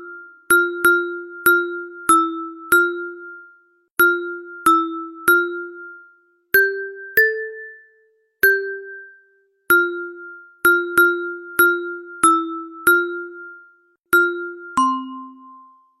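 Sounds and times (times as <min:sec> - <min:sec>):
bell-like ringtone melody: 0:00.0 - 0:16.0.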